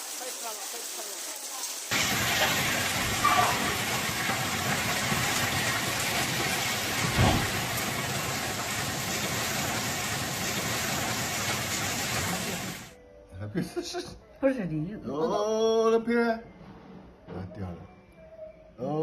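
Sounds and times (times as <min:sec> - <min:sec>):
low thump: 0:07.0 - 0:07.6.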